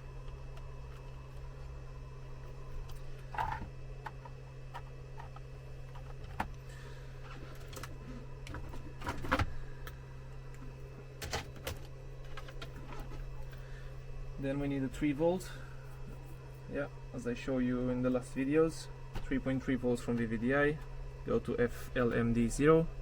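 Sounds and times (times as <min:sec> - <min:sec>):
steady low hum: 0:00.0 - 0:23.0
cables clicking and rattling: 0:07.2 - 0:13.6.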